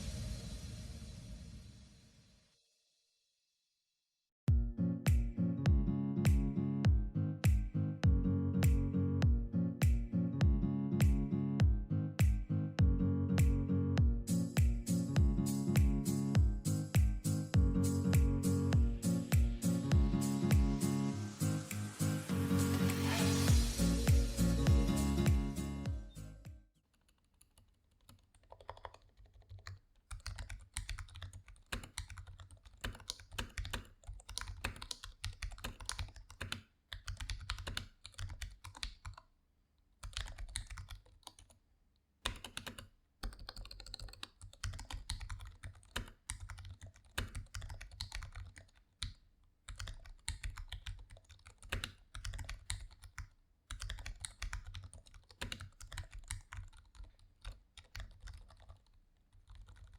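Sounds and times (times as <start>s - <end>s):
typing on mechanical keyboard: 27.0s - 39.3s, 40.0s - 41.6s, 42.2s - 59.9s.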